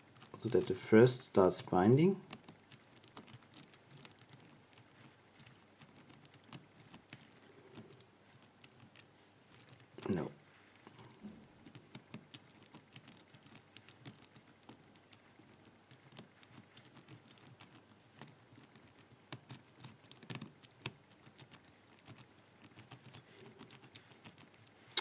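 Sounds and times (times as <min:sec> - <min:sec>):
padlock wheels clicking: 0:02.3 - 0:10.0.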